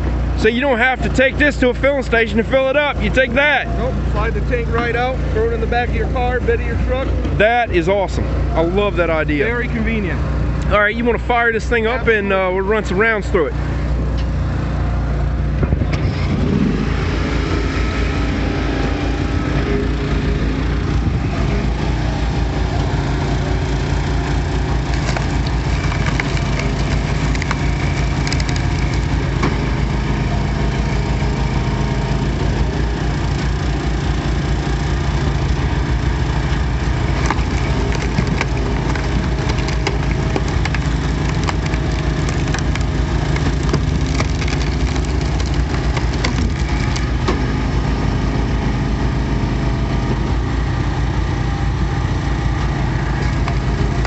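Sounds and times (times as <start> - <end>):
log splitter engine running: 0.0 - 54.0
wood cracking: 23.6 - 29.7, 35.5 - 47.4, 53.1 - 54.0.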